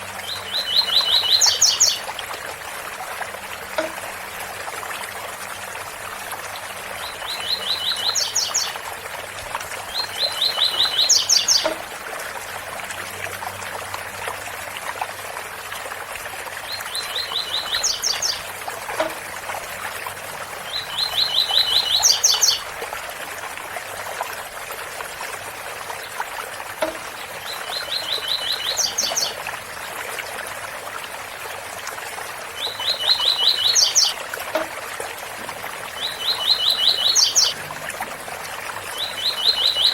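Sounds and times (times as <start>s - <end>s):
bird singing: 0.2s - 2.0s, 7.0s - 8.8s, 10.0s - 11.8s, 16.7s - 18.5s, 20.7s - 22.6s, 27.0s - 29.4s, 32.6s - 34.2s, 36.0s - 37.6s, 38.9s - 39.9s.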